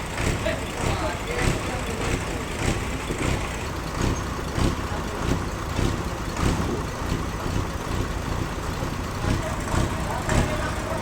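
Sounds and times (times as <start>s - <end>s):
sawmill machinery running: 0.0s - 11.0s.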